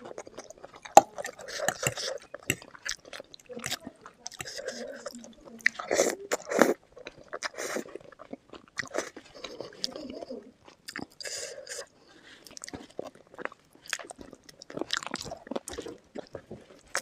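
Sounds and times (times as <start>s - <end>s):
person biting and chewing food: 0.0s - 9.8s, 10.7s - 17.0s.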